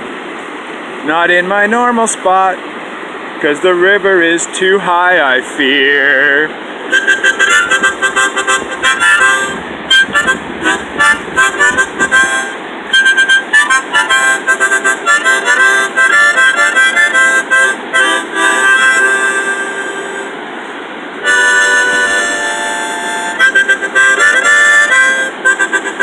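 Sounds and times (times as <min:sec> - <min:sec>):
harmonica playing: 0:06.9 - 0:26.0.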